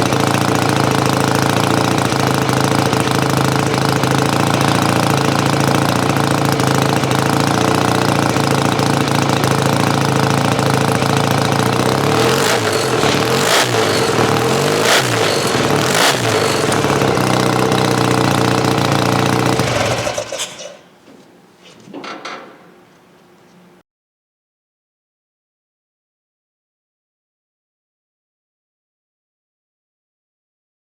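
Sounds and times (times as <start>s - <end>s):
motorcycle engine idling and revving: 0.0s - 20.8s.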